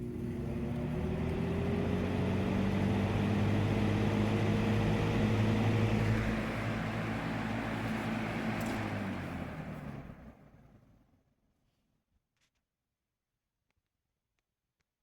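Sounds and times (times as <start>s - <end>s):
box fan spinning up: 0.0s - 11.2s.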